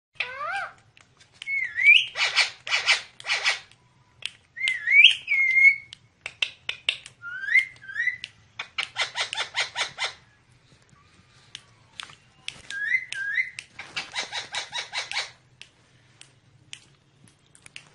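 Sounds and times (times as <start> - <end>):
parakeet whistling: 1.5 - 3.6, 4.6 - 5.9, 7.2 - 10.2, 12.7 - 15.4.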